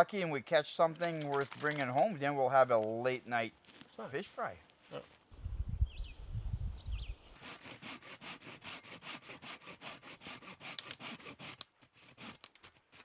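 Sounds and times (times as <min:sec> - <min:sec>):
hand saw cutting wood: 0:07.3 - 0:13.0.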